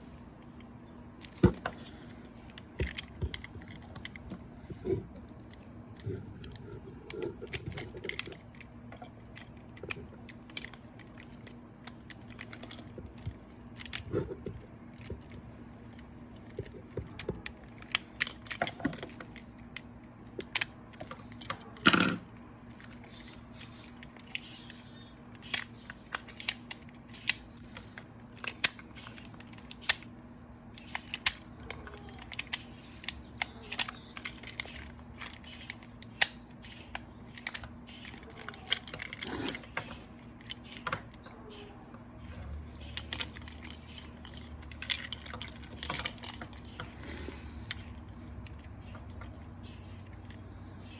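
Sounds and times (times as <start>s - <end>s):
metal parts and tools clicking: 42.2s - 49.3s.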